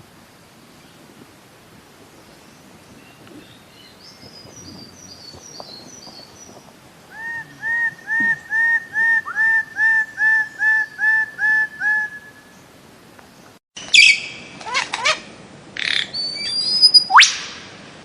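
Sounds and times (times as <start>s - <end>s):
steady hiss: 0.0s - 8.6s
bird calling with high chirps: 2.2s - 12.7s, 13.8s - 15.2s, 15.8s - 17.6s.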